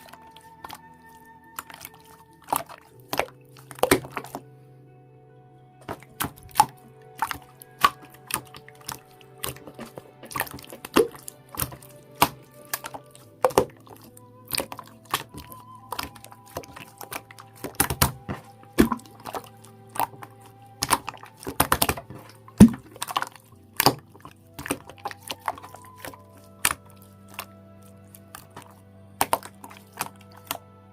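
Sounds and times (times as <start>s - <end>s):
slime squishing with wet pops: 0.0s - 4.4s, 5.8s - 30.6s
soft background music: 0.0s - 30.9s.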